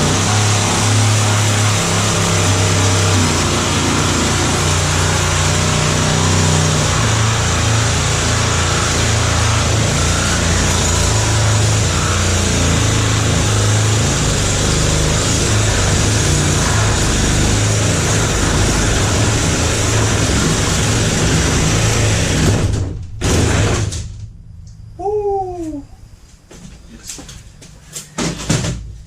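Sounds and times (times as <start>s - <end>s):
motor humming and whirring: 0.0s - 22.8s.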